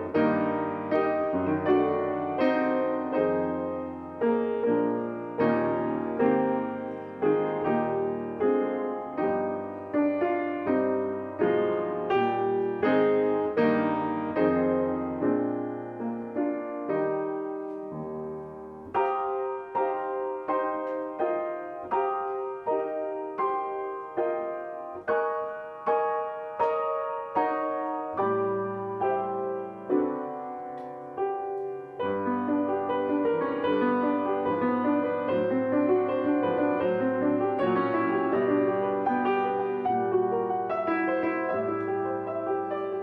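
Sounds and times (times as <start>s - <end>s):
piano music: 0.0s - 43.0s.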